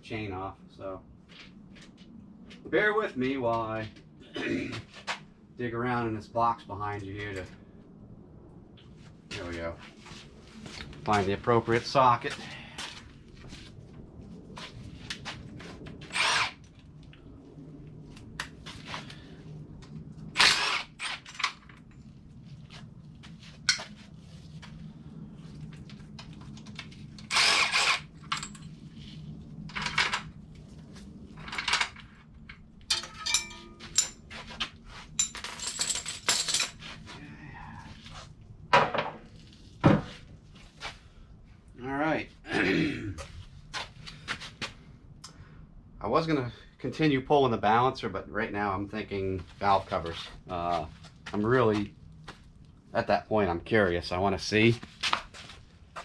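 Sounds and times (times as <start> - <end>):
steady low hum: 0.0 - 56.0
metal tools clanking: 32.9 - 34.3, 35.2 - 36.8.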